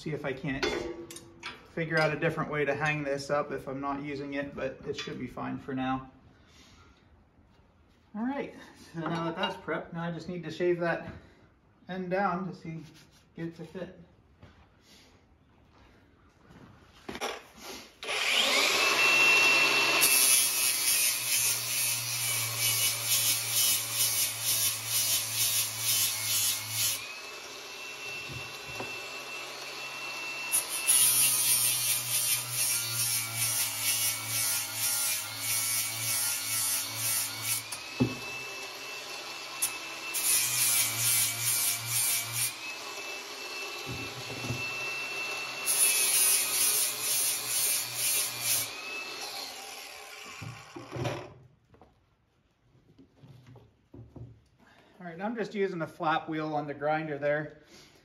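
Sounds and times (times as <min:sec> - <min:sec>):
angle grinder grinding steel: 0:18.0 - 0:51.0.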